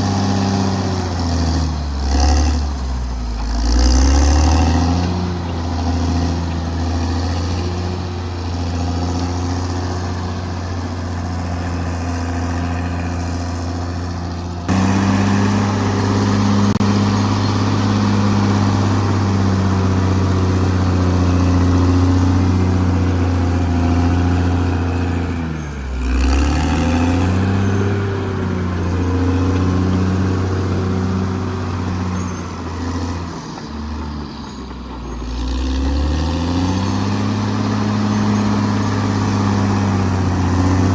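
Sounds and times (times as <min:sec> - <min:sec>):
bulldozer diesel engine running: 0:00.0 - 0:40.9.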